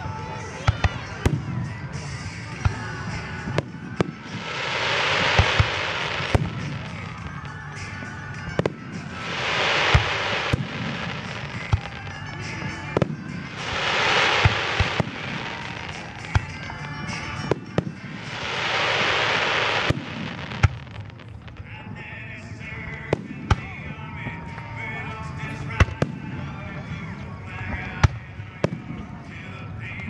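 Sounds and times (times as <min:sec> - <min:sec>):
dense crackling hiss of fireworks: 0:00.0 - 0:30.0
firework shells bursting: 0:04.0 - 0:07.2, 0:08.6 - 0:21.4.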